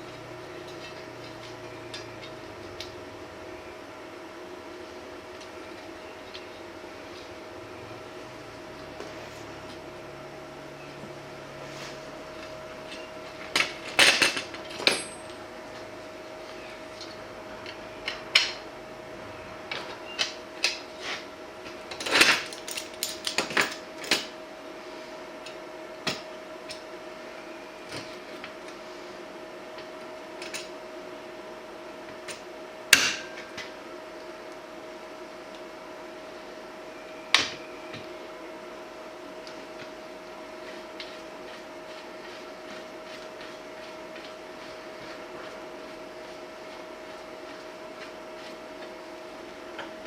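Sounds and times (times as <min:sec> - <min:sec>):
steady background hum: 0:00.0 - 0:50.0
metal tools clinking and knocking: 0:12.9 - 0:15.4.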